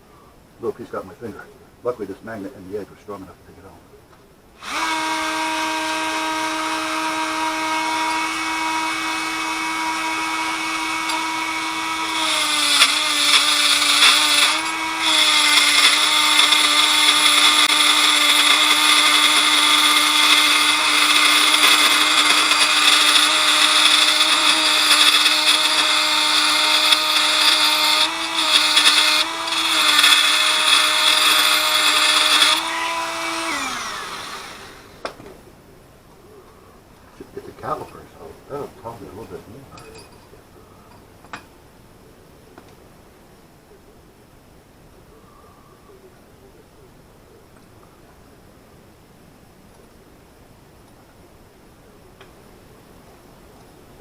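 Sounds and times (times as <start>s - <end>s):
electric power tool whining: 4.6s - 35.2s
loud grinding hiss: 4.6s - 35.2s.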